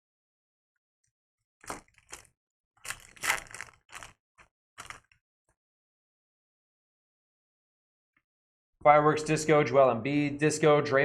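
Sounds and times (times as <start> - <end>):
plastic wrapper crinkling: 1.6 - 4.2, 4.8 - 5.2.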